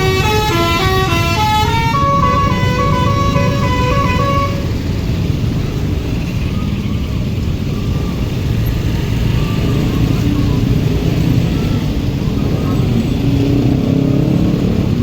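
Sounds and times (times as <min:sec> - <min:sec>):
musical bus horn warbling: 0:00.0 - 0:04.8
heavy vehicle engine rumble: 0:00.0 - 0:15.0.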